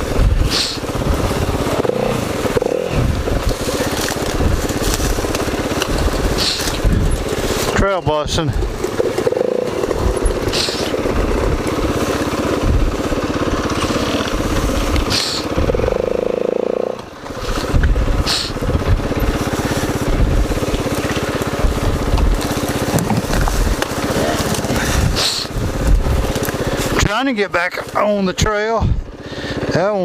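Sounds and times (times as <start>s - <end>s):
branches brushing past: 0.0s - 16.2s, 17.2s - 27.0s
dirt bike engine revving: 0.0s - 30.0s.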